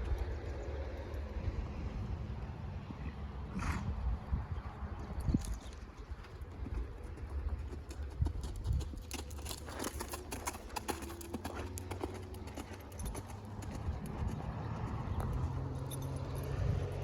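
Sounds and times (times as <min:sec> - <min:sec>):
horse hoofbeats: 0:06.0 - 0:17.0.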